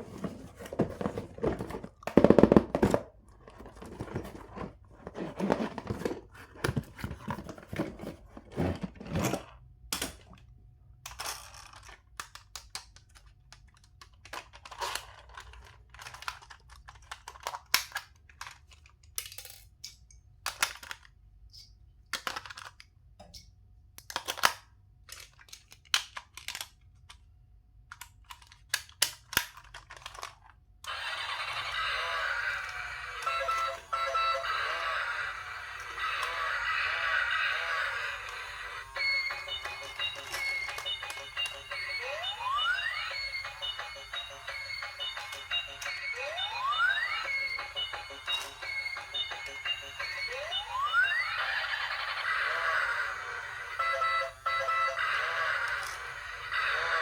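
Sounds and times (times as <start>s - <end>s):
plastic toys clicking and tapping: 0.0s - 8.2s, 11.0s - 23.0s, 23.9s - 30.6s, 38.2s - 42.2s.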